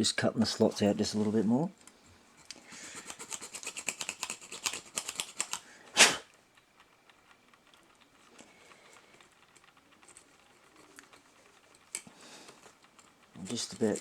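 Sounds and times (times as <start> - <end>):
hand tool scraping and clicking: 6.9 - 14.0.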